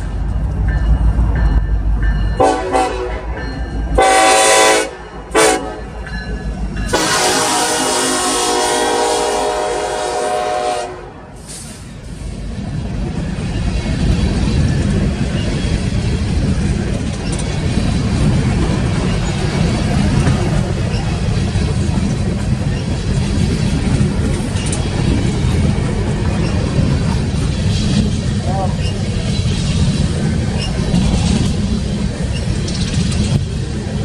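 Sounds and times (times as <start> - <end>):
train rumbling past: 0.0 - 34.0
train horn: 2.4 - 3.3, 4.0 - 6.0, 6.9 - 11.5.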